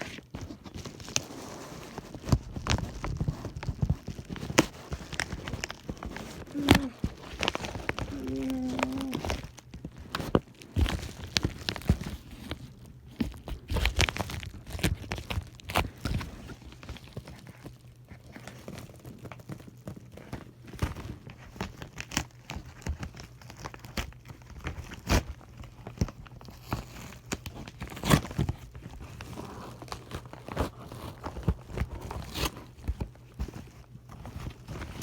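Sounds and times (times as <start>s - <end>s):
faint low hum: 0.0s - 35.0s
package wrapping crinkling and tearing: 0.0s - 35.0s.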